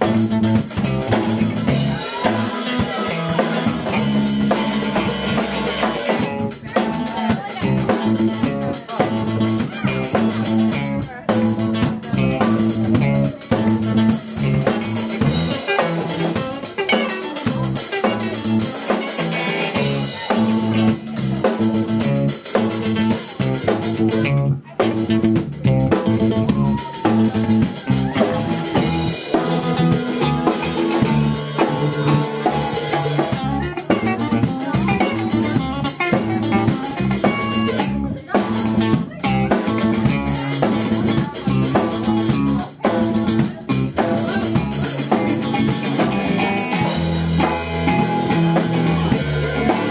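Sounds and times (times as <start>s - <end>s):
band playing drums and guitar: 0.0s - 49.9s.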